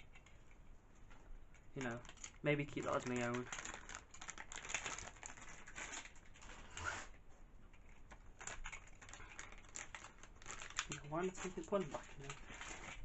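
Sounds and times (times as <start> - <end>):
plastic toy parts clicking: 1.8 - 6.4, 7.7 - 13.0
packaging rustling: 1.8 - 7.1, 7.8 - 13.0.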